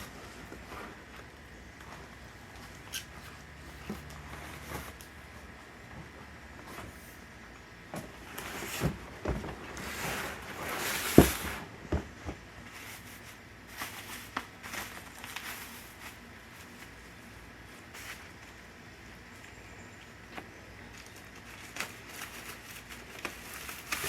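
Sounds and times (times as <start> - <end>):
packaging rustling: 20.9 - 24.0.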